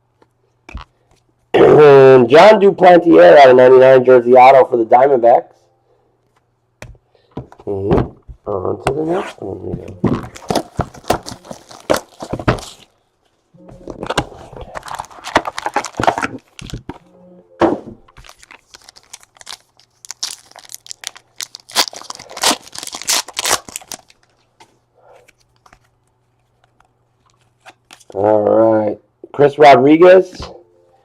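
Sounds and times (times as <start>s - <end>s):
packaging tearing and crinkling: 10.0s - 12.9s, 13.9s - 17.0s, 18.1s - 24.5s.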